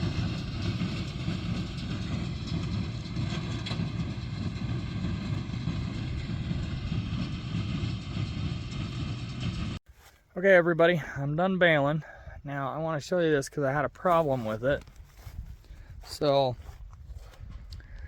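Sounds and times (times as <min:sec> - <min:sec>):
baler machinery working: 0:00.0 - 0:09.8
tractor engine running: 0:00.0 - 0:09.8.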